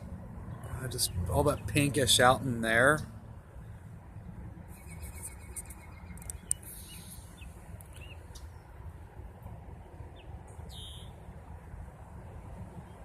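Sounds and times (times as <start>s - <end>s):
low outdoor rumble: 0.0s - 13.0s
high bird chirps: 4.7s - 8.6s, 10.2s - 11.2s.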